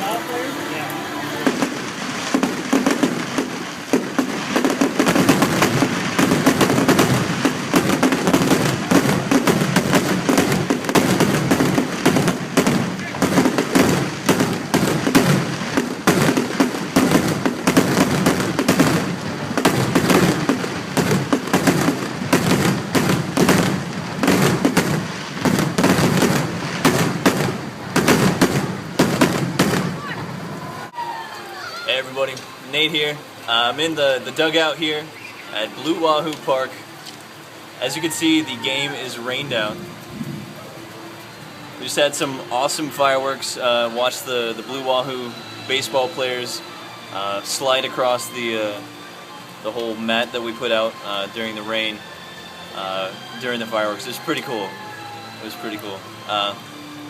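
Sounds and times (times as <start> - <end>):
fireworks bangs and crackling: 0.0 - 30.6, 32.0 - 52.1, 52.7 - 57.0
crowd voices: 0.0 - 57.0.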